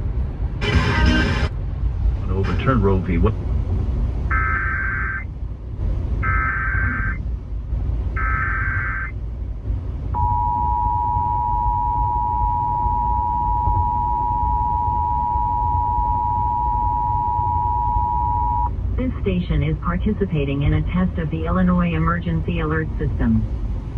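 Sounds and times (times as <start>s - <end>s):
warbling digital data bursts: 8.2s - 9.1s
two-tone attention signal: 10.2s - 18.7s.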